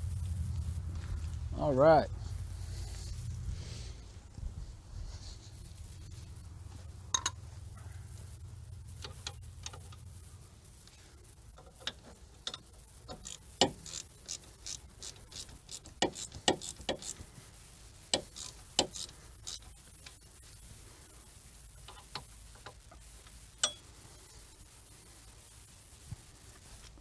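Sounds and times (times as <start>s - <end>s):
low hum: 0.0s - 10.6s
ratchet wrench clicking: 11.6s - 17.2s, 18.2s - 20.2s.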